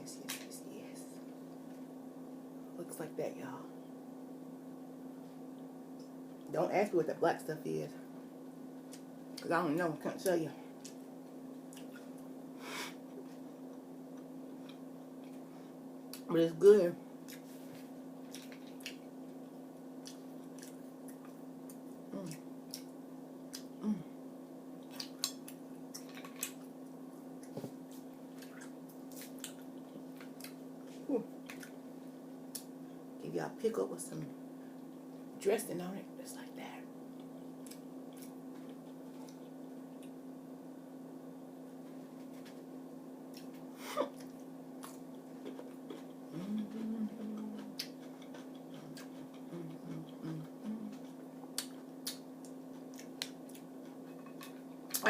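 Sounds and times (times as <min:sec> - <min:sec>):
steady low hum: 0:00.0 - 0:55.0
person humming mm: 0:23.8 - 0:24.2, 0:46.3 - 0:47.8, 0:48.8 - 0:51.1.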